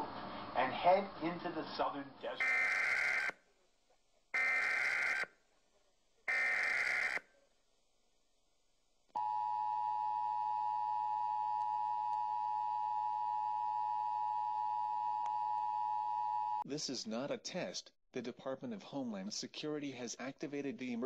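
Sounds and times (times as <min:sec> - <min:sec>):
alert data bursts: 0:02.4 - 0:03.3, 0:04.4 - 0:05.3, 0:06.3 - 0:07.2.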